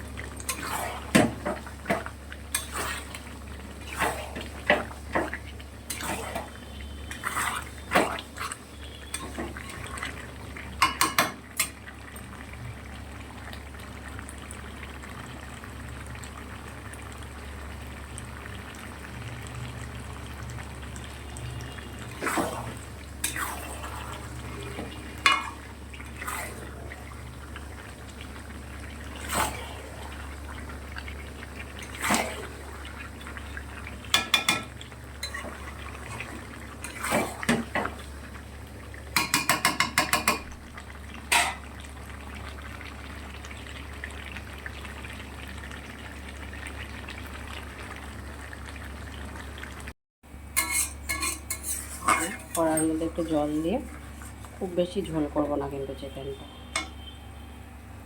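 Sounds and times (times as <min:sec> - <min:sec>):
food sizzling in a pan: 0:00.0 - 0:58.0
metal spatula scraping a pan: 0:41.3 - 0:41.7, 0:50.6 - 0:54.3.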